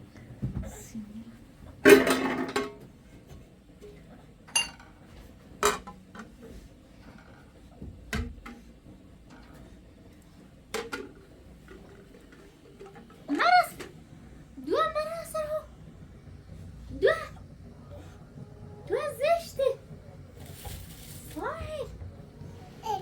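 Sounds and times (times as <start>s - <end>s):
dishes and utensils clattering: 1.8s - 2.9s, 4.5s - 5.0s, 5.6s - 6.3s.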